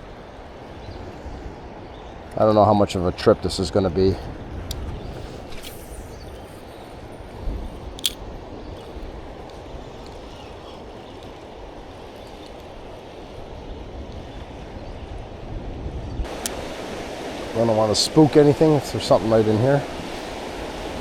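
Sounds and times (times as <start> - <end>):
sharp click: 7.8 - 11.4
river rushing: 16.3 - 21.0.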